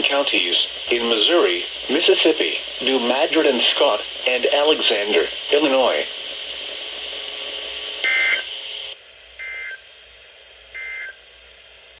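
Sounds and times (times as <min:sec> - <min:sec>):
radio hiss: 0:00.0 - 0:09.6.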